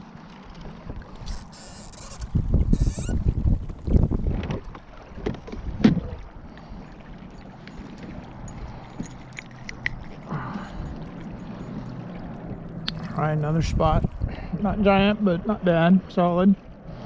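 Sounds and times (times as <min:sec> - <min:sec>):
wind rumble on microphone: 0:00.6 - 0:15.6.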